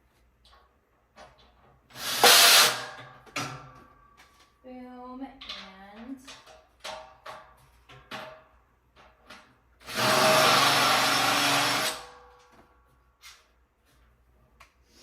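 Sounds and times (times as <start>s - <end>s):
power drill driving a screw: 2.0s - 2.9s, 9.8s - 12.2s.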